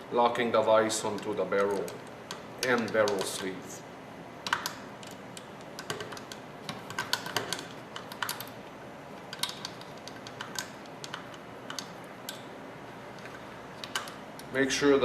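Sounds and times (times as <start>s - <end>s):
small metal parts clicking: 4.4s - 8.6s, 9.3s - 12.5s, 13.1s - 14.6s.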